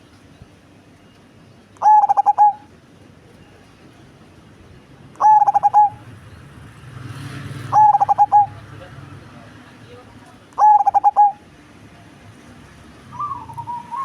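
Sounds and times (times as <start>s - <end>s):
dove cooing: 1.8s - 2.7s, 5.2s - 6.1s, 7.7s - 8.6s, 10.6s - 11.4s, 13.1s - 14.0s.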